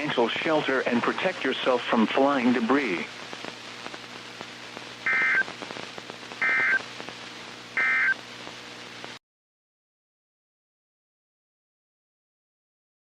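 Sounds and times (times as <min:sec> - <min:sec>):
faint receiver hiss and hum: 0:00.0 - 0:09.2
two-tone digital data bursts: 0:05.1 - 0:05.5, 0:06.4 - 0:06.8, 0:07.8 - 0:08.2.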